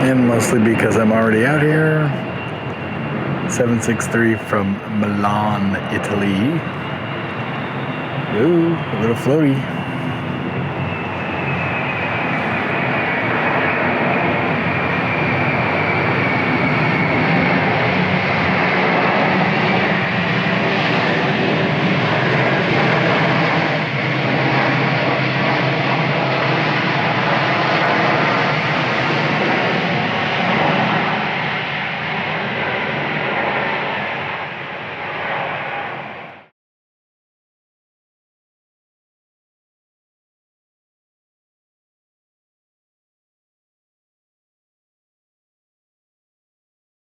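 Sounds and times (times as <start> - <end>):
jet engines roaring with whine: 0.0 - 36.5.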